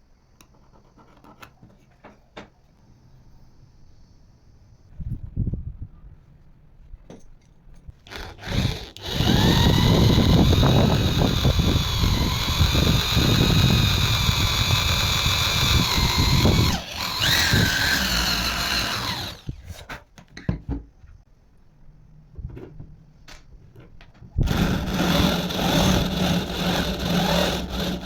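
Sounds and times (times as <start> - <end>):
power tool motor whining: 8.1 - 19.8, 24.4 - 28.0.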